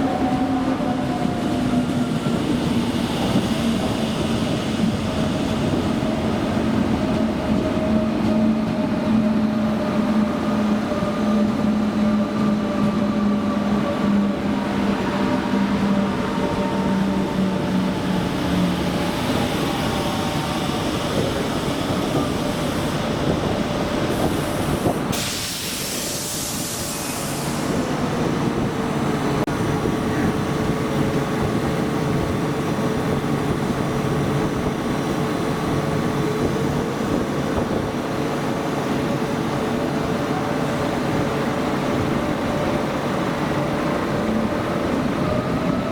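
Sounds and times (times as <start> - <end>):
air hiss burst: 24.1 - 27.8.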